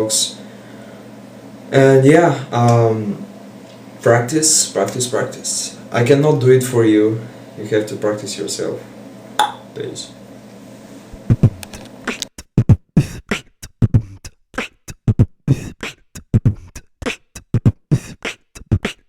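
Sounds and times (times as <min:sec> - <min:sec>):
beatbox vocal percussion: 0:11.1 - 0:19.0.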